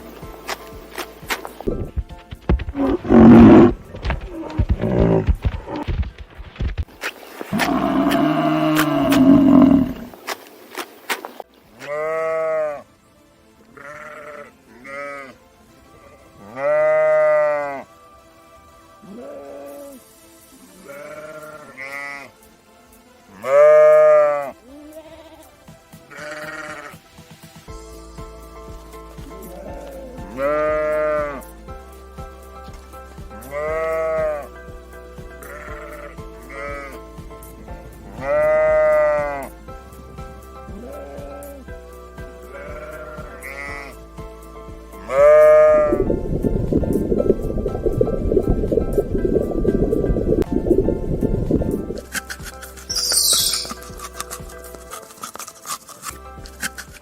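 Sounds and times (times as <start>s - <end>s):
background music with steady beat: 0.0s - 57.0s
sheep bleating: 7.5s - 10.1s, 11.7s - 12.9s, 13.7s - 15.4s, 16.4s - 17.9s, 20.8s - 22.3s, 23.4s - 27.0s, 29.3s - 31.4s, 33.4s - 34.5s, 35.4s - 37.0s, 38.1s - 39.5s, 42.5s - 44.0s, 45.0s - 46.0s.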